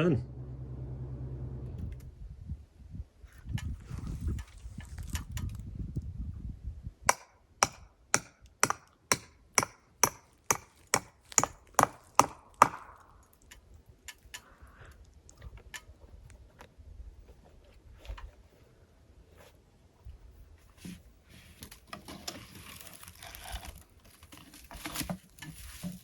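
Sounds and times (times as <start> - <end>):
hammer striking wood: 7.1 - 13.1.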